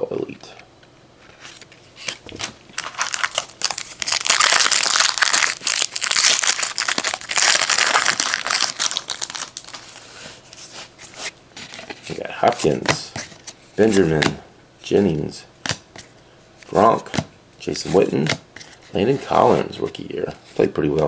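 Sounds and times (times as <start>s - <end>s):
foil wrapper crinkling and tearing: 1.5s - 10.0s.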